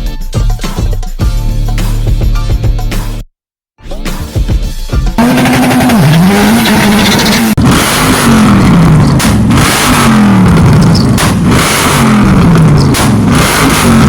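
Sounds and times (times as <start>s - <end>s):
car engine revving: 5.2s - 14.0s.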